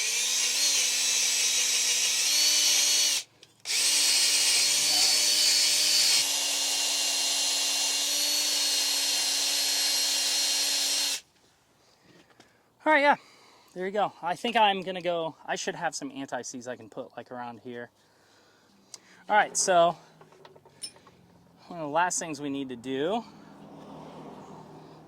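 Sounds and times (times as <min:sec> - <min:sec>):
power drill wire brush scraping: 0:00.0 - 0:11.2.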